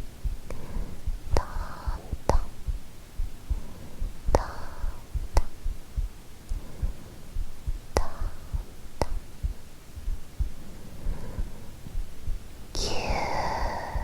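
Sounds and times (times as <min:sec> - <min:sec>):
heartbeat thumps: 0:00.0 - 0:14.0
soft breath: 0:00.0 - 0:14.0
sharp taps: 0:04.3 - 0:10.6.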